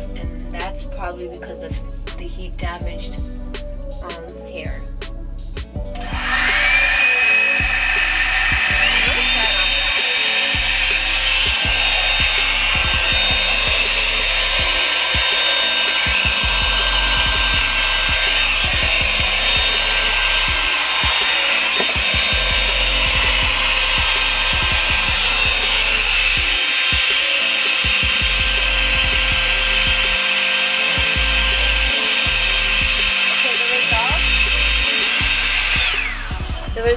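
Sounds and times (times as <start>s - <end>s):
background music: 0.0s - 36.9s
hair dryer running: 5.5s - 36.9s.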